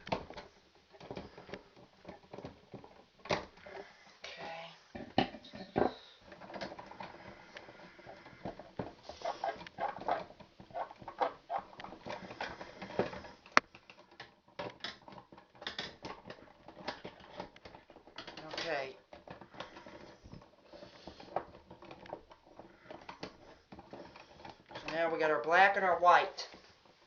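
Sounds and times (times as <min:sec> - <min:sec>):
wires clicking and scraping: 0:00.0 - 0:27.0.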